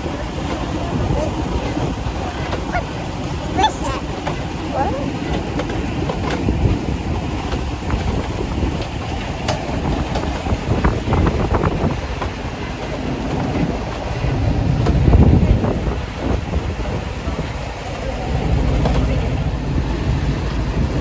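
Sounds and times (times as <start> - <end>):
wagon rumbling and rattling: 0.0 - 21.0.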